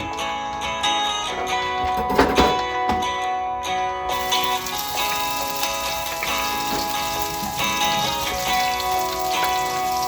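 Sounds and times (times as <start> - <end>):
acoustic guitar music: 0.0 - 10.0.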